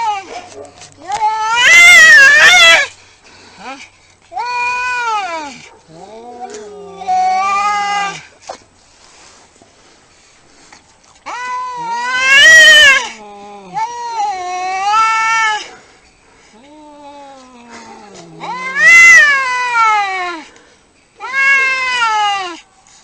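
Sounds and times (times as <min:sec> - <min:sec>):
cats yowling in a fight: 0:00.0 - 0:02.9, 0:04.4 - 0:08.3, 0:11.3 - 0:15.9, 0:16.5 - 0:20.5, 0:21.2 - 0:22.6
cat growling: 0:05.4 - 0:08.2, 0:16.5 - 0:20.3.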